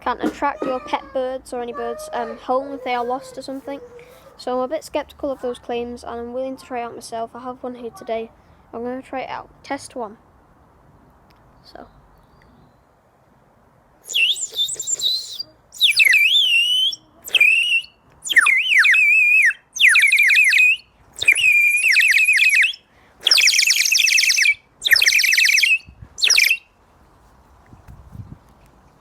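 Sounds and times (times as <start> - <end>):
bird whistle warbling: 14.1 - 26.7.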